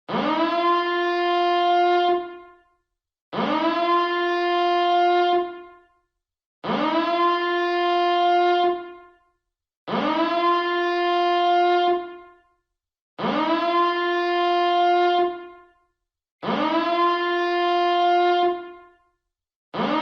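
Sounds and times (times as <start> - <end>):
electronic alarm siren blasts: 0.1 - 2.7, 3.3 - 5.9, 6.6 - 9.2, 9.9 - 12.5, 13.2 - 15.8, 16.4 - 19.1, 19.8 - 20.0.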